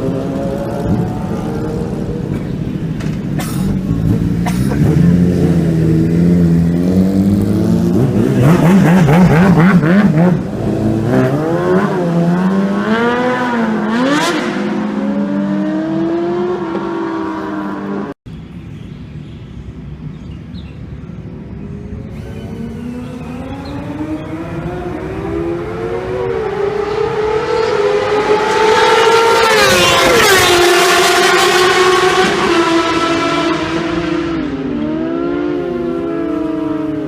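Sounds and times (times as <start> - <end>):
motorcycle engines revving: 0.0 - 37.0.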